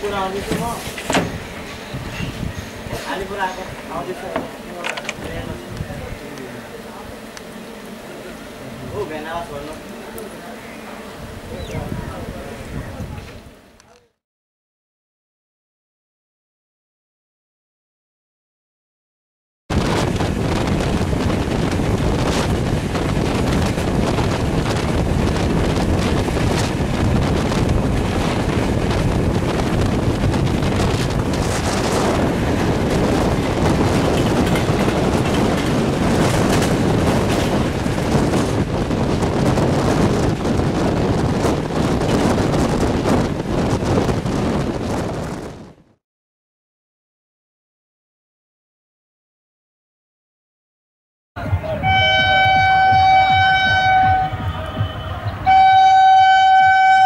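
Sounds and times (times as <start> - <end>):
wind buffeting microphone: 0.0 - 6.4, 11.0 - 13.6, 19.7 - 46.0
train rushing at speed: 0.0 - 13.1, 19.7 - 46.0, 51.4 - 57.0.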